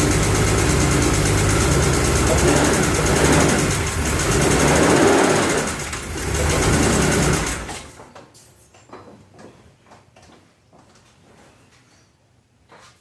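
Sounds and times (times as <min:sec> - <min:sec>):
car engine misfiring: 0:00.0 - 0:08.0.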